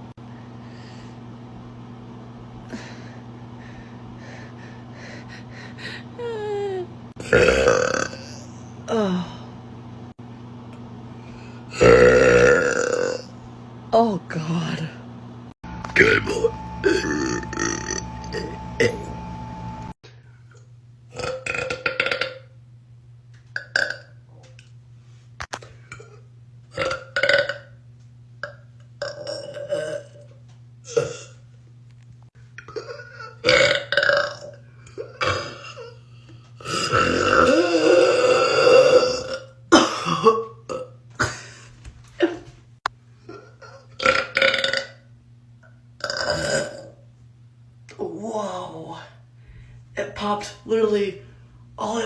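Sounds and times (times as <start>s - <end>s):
woman burping loudly: 7.2s - 9.2s, 11.7s - 13.3s, 16.0s - 19.1s, 21.2s - 22.4s, 23.6s - 24.1s, 26.8s - 27.7s, 28.4s - 30.2s, 30.9s - 31.4s, 32.6s - 36.0s, 36.6s - 41.4s, 43.9s - 45.0s, 46.0s - 47.0s.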